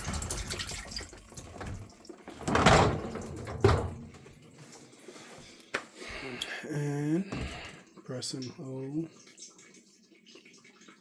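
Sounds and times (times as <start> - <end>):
dishwasher rack sliding and rattling: 1.5 - 4.3.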